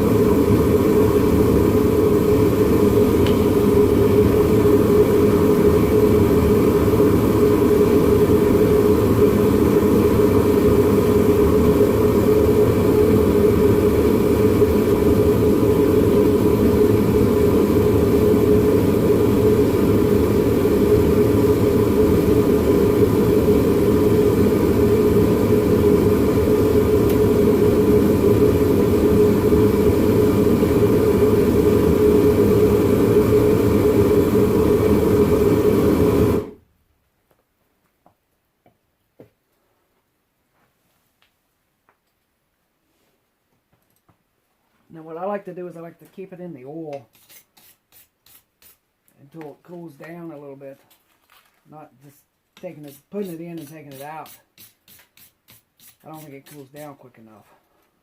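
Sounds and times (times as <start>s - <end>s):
forge running with steady hum: 0.0s - 36.6s, 52.6s - 57.3s.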